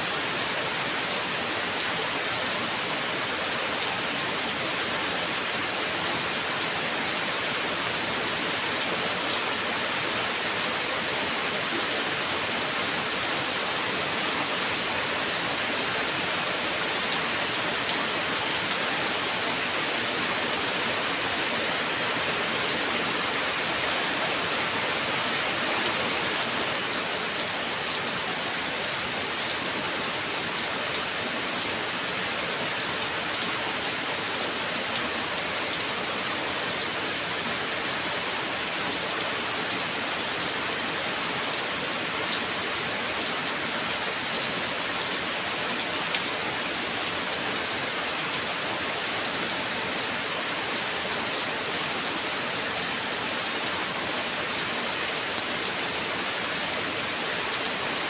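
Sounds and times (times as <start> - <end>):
heavy rain: 0.0 - 58.0.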